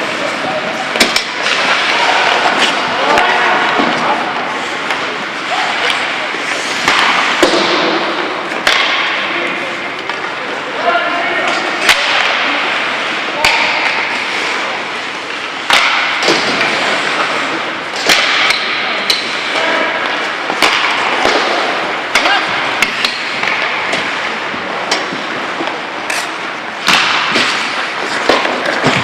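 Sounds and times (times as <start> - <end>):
skates scraping on ice: 0.0 - 8.6, 19.3 - 29.0
hockey sticks and puck clacking: 0.0 - 29.0
players calling out: 17.0 - 24.4.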